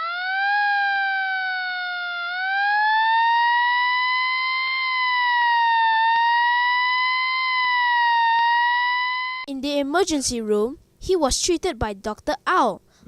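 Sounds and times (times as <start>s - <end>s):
siren wailing: 0.0s - 9.5s.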